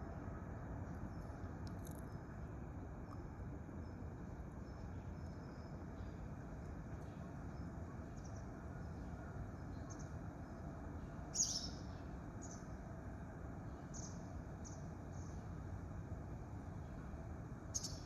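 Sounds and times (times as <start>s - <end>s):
small bird chirping: 11.3s - 12.7s, 17.7s - 18.0s.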